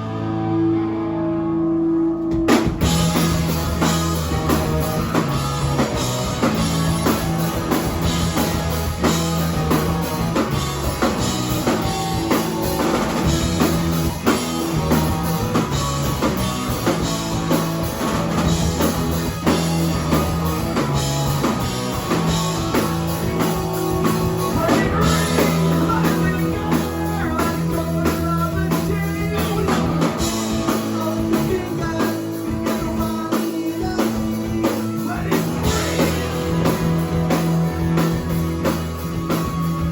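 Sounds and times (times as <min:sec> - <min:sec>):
bass guitar: 0:00.0 - 0:39.9
guitars: 0:00.0 - 0:39.9
drum kit: 0:02.2 - 0:39.9
person singing: 0:23.2 - 0:36.6.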